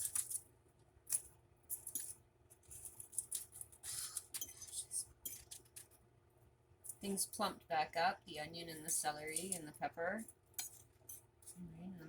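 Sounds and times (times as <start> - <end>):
crinkly rustles: 1.7 - 6.0.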